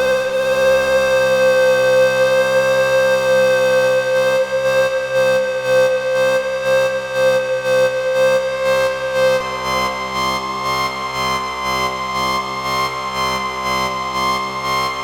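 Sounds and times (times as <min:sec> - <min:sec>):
synthesizer lead note: 0:00.0 - 0:03.8.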